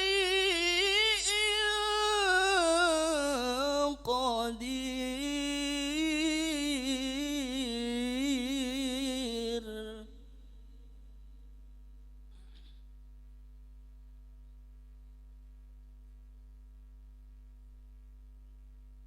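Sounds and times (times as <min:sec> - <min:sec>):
person reciting melodically: 0:00.0 - 0:10.3
faint hum: 0:00.0 - 0:19.0.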